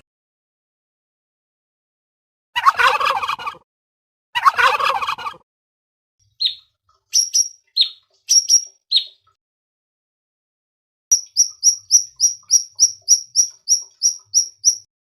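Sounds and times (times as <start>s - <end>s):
turkey gobbling: 2.6s - 3.6s, 4.4s - 5.4s
small bird chirping: 6.2s - 9.3s, 11.1s - 14.9s.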